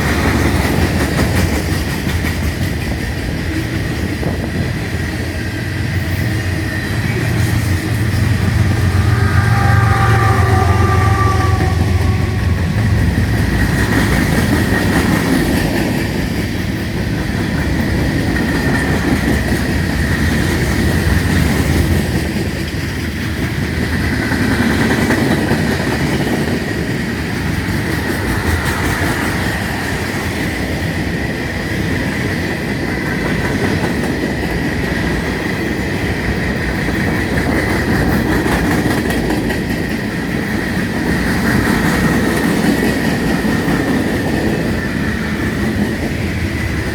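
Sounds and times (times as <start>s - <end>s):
train wheels rattling over rails: 0.0s - 46.9s
high-pitched squeal: 6.5s - 14.3s.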